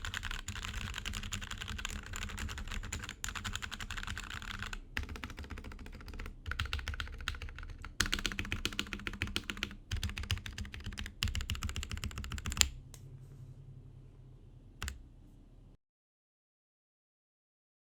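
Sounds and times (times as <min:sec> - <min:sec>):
fast mechanical keyboard typing: 0:00.0 - 0:12.8.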